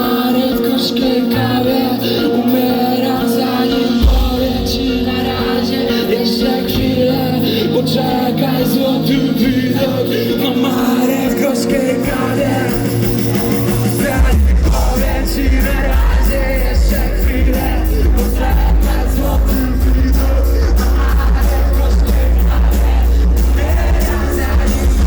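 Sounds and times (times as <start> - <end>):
loud concert music: 0.0 - 25.0
person singing: 0.0 - 25.0
deep bass line: 12.1 - 25.0.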